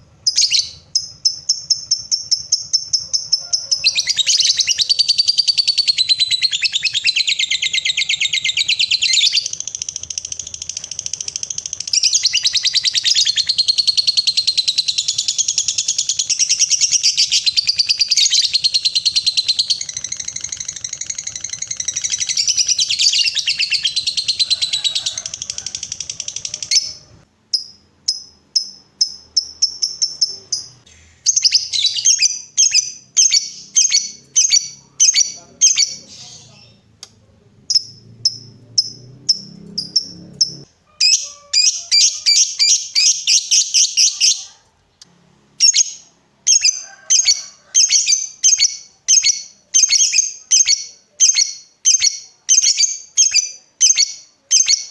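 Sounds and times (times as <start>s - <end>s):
lovebird rattling trill: 0.2s - 30.8s.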